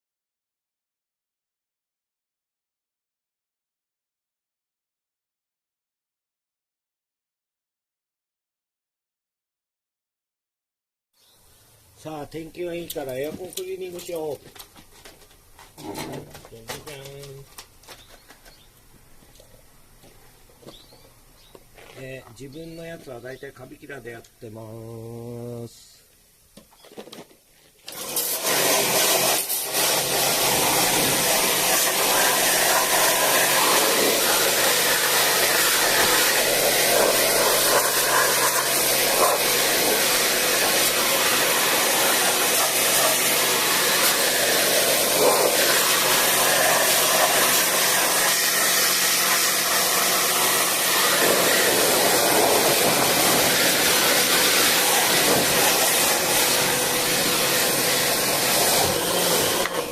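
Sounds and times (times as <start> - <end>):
small electric motor running: 28.0 - 59.9.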